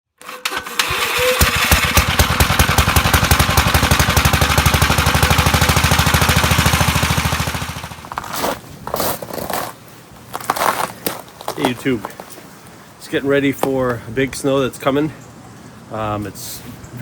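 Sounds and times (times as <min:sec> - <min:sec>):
small engine running steadily: 0:01.2 - 0:08.1.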